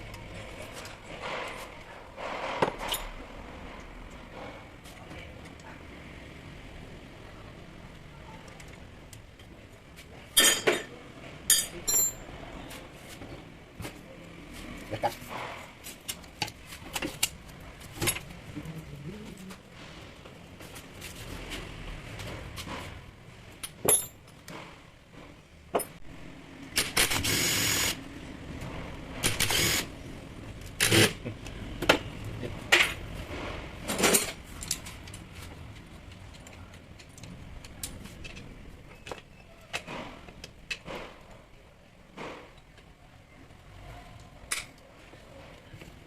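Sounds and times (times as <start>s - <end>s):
metal tools clinking and knocking: 10.3s - 12.3s, 23.6s - 24.5s.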